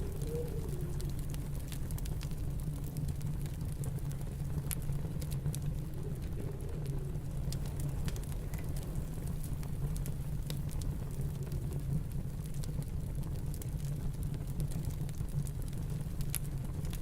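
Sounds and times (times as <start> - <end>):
snowstorm wind rumble: 0.0 - 13.2
wood fire crackling and popping: 0.0 - 17.0.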